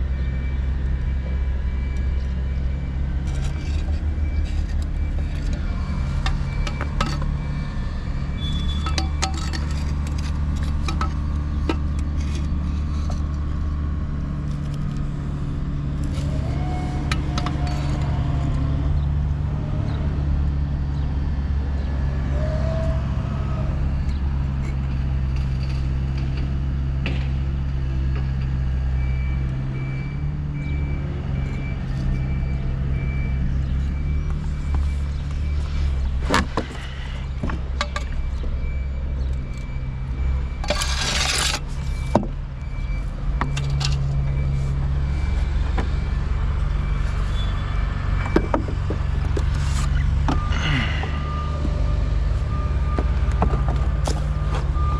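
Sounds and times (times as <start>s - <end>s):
low engine hum: 0.0s - 54.9s.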